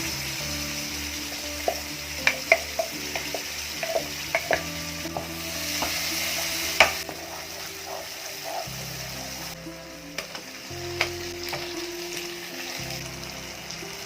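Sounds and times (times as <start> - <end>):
food sizzling in a pan: 0.0 - 14.0
spatula clicking on pan: 1.6 - 5.3.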